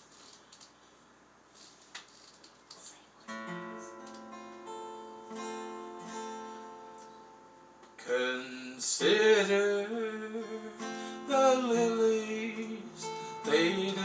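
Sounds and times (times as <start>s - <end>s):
acoustic guitar strumming: 3.3s - 14.0s.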